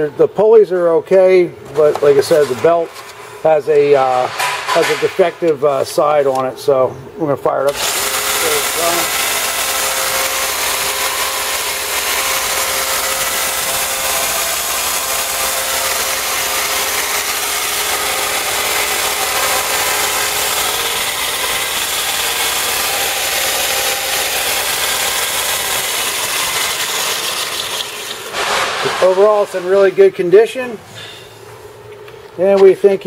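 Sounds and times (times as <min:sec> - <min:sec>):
belt sander whirring: 0:07.7 - 0:30.6.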